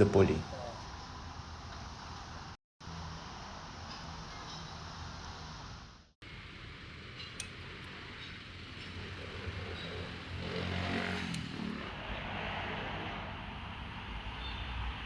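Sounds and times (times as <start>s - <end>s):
sharp metal clicks: 7.1s - 11.8s.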